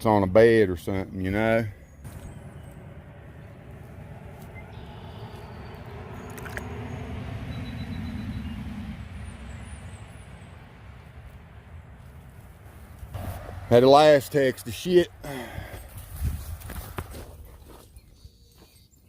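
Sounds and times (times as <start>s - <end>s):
low rumble of passing motor: 1.7s - 13.8s.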